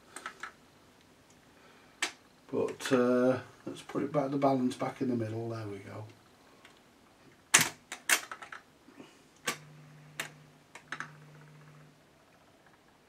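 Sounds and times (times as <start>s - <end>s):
faint low hum: 0.0s - 13.0s
record player controls clicking: 9.4s - 13.0s.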